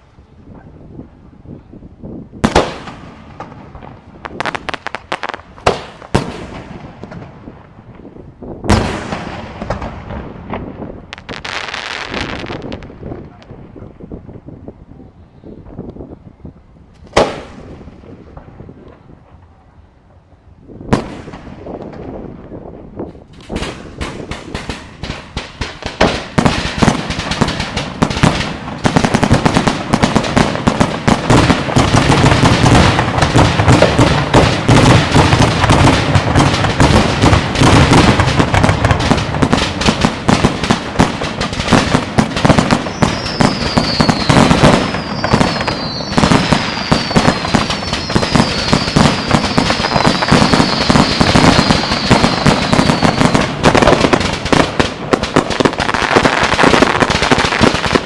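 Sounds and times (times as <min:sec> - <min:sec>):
firework bangs and crackle: 0:00.0 - 0:14.7, 0:17.0 - 0:19.5, 0:20.7 - 0:58.0
falling firework whistles: 0:42.7 - 0:53.4.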